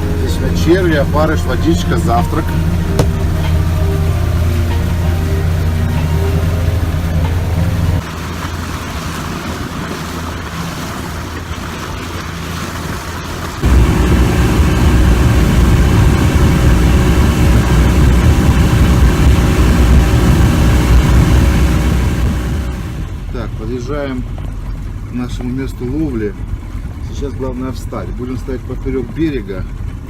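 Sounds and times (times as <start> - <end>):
water rushing: 0.0 - 28.4
outboard engine running: 0.0 - 30.0
rushing wind: 13.6 - 23.3.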